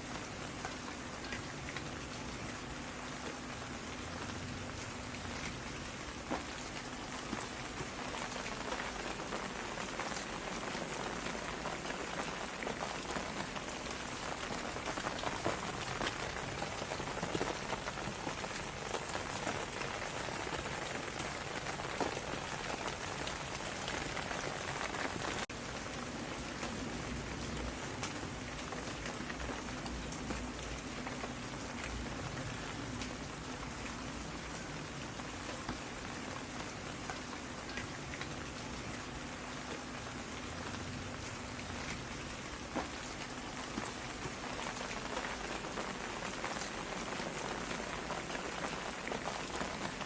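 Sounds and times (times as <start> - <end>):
raindrops ticking close by: 0.0 - 50.0
steady rain: 0.0 - 50.0.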